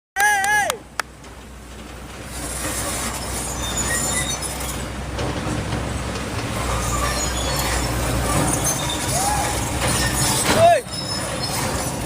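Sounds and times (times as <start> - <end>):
excavator running: 0.2 - 12.0
high metallic squeals: 2.4 - 5.0, 6.6 - 12.0.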